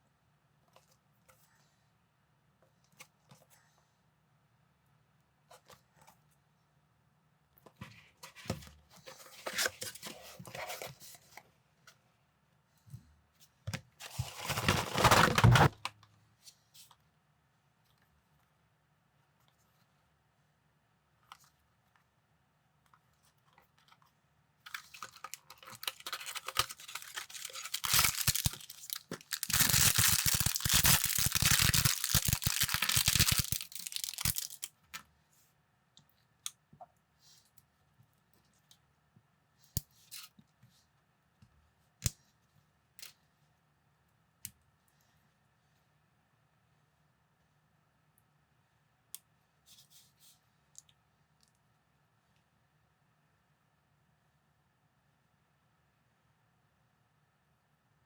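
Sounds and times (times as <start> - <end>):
packaging tearing and crinkling: 14.2 - 15.8, 24.7 - 34.7
small plastic pieces clicking: 25.0 - 34.7.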